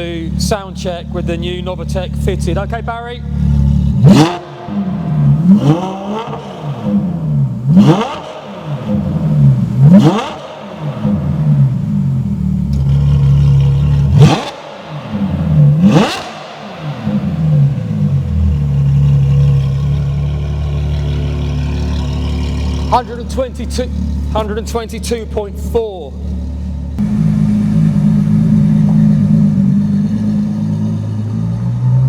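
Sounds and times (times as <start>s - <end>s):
car engine idling: 0.0s - 31.8s
car engine revving: 0.0s - 32.0s.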